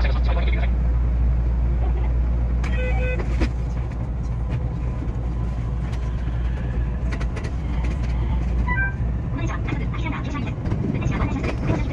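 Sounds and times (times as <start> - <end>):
electric train rumbling: 0.0 - 11.9.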